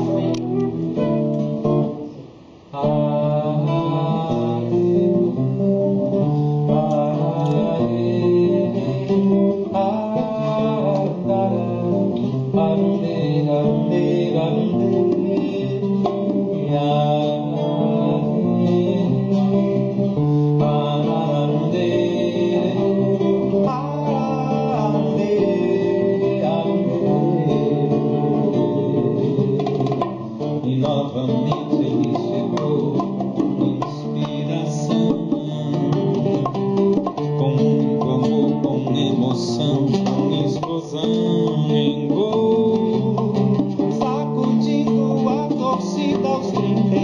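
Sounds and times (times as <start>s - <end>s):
live band music: 0.0s - 47.0s
strummed guitar: 0.0s - 47.0s.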